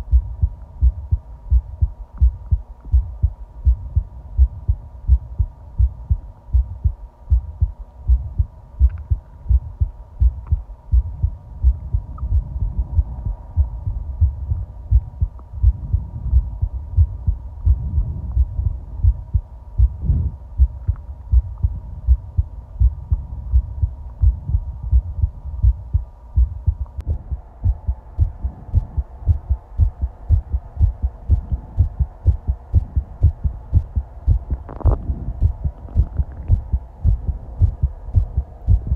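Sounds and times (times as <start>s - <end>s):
heartbeat thumps: 0.0s - 38.9s
stomach gurgle: 34.5s - 36.6s.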